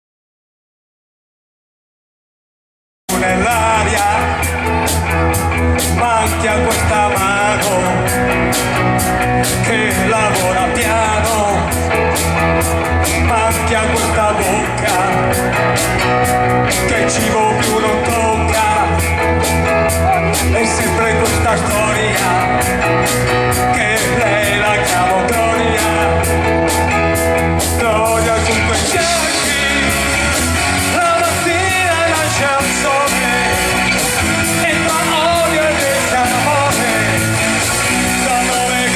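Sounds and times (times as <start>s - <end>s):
rock song with singing: 3.1s - 38.9s
steady drum beat: 3.1s - 38.9s.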